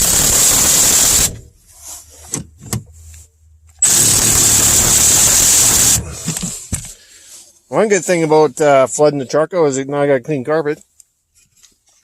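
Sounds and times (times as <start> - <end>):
power wrench whining: 0.0 - 1.5, 3.8 - 6.7.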